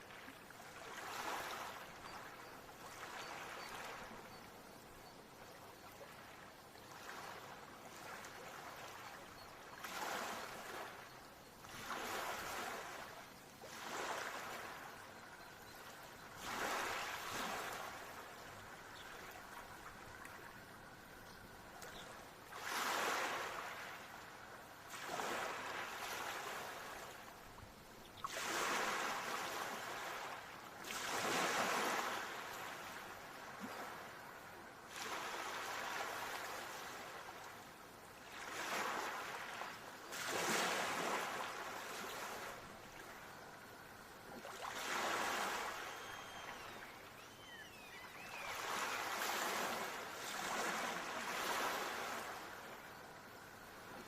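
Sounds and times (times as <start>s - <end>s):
ocean waves breaking: 44.4s - 52.7s.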